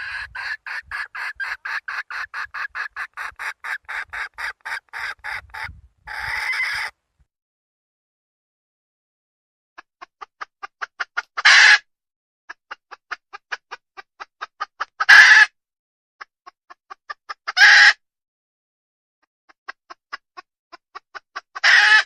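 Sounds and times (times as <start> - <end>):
hen clucking and squawking: 0.0 - 7.0, 10.0 - 11.9, 12.5 - 15.6, 16.2 - 18.0, 19.7 - 22.0.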